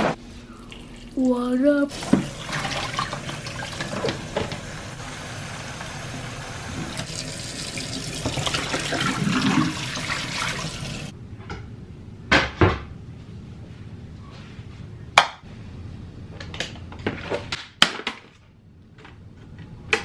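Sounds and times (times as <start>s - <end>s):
tap water running into sink: 1.9s - 11.1s.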